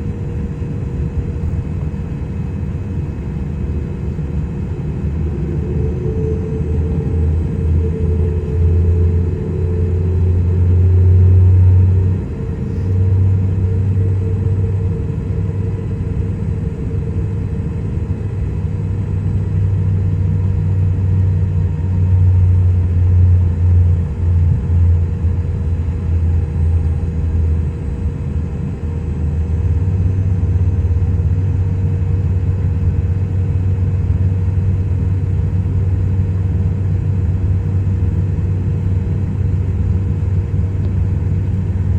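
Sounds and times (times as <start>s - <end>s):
faint steady tones: 0.0s - 28.8s
jet engines low rumble: 0.0s - 41.9s.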